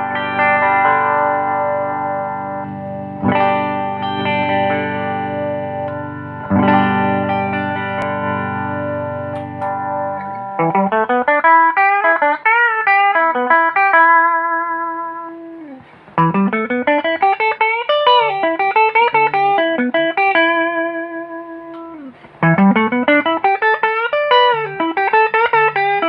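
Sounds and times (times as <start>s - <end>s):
electric guitar chord and runs: 0.0s - 26.0s.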